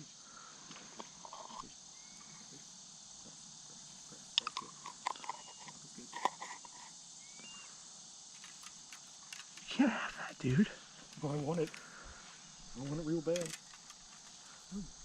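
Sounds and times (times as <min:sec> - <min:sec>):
crickets droning: 0:00.0 - 0:15.0
duck clicking: 0:08.4 - 0:12.0, 0:12.8 - 0:14.6.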